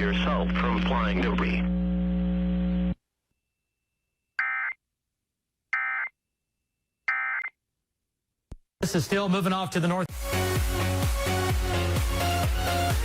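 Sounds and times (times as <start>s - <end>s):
electrical hum: 0.0s - 3.0s.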